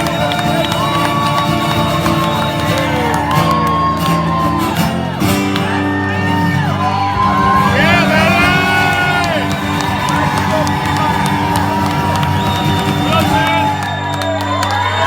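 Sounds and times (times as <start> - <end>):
crowd shouting and whooping: 0.0 - 15.0
live band playing loud music: 4.9 - 14.2.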